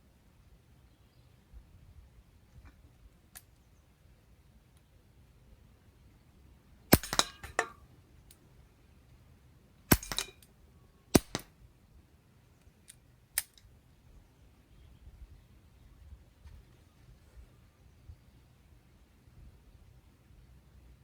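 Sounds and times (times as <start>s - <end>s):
air pistol shots: 6.9s - 7.7s, 9.9s - 10.4s, 11.1s - 11.5s.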